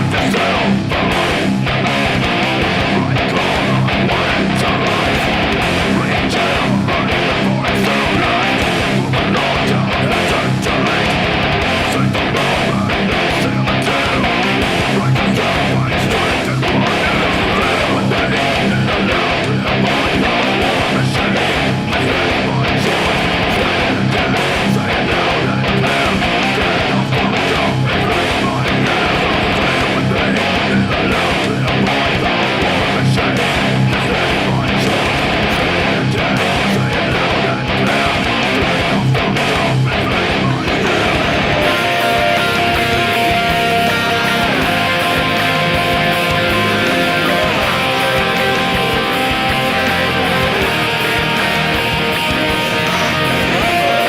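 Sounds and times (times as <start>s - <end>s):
band track with drums: 0.0s - 54.0s
distorted electric guitar riff: 0.0s - 54.0s
steady repeated hits: 14.0s - 54.0s.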